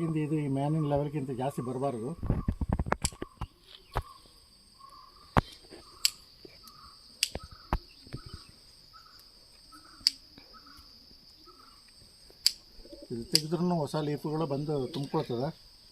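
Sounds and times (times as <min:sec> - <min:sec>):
insects chirring: 0:00.0 - 0:15.9
scissors snipping leaves: 0:13.3 - 0:13.5.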